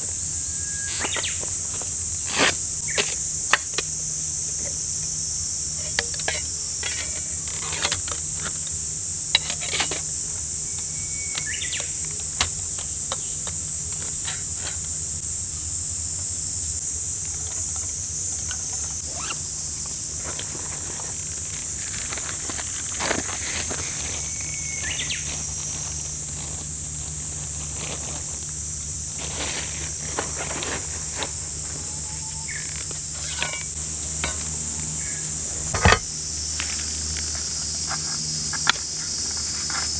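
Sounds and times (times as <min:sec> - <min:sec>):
insect chorus: 0:00.0 - 0:39.9
sharp clicks and knocks: 0:35.7 - 0:36.1.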